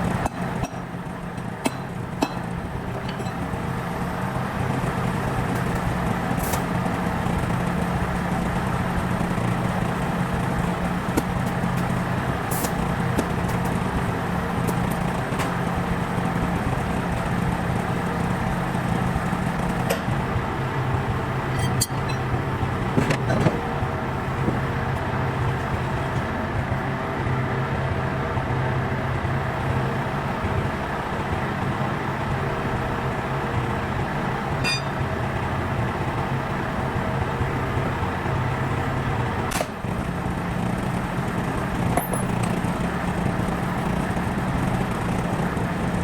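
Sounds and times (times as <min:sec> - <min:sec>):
engine running steadily: 0:00.0 - 0:46.0
sharp metallic clicks and knocks: 0:01.6 - 0:03.4.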